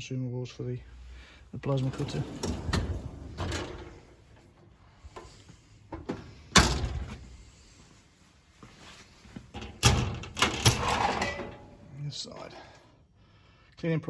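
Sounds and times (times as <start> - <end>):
metal tool chest drawer shutting: 1.7 - 4.2, 6.0 - 7.2, 9.6 - 11.8.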